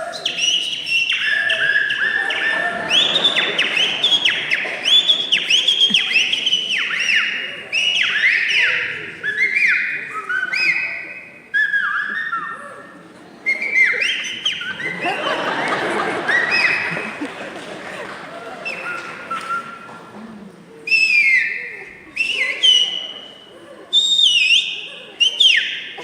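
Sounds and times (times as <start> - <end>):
person whistling fast notes: 0.1 - 12.6, 18.6 - 19.9, 20.9 - 23.3, 23.9 - 25.8.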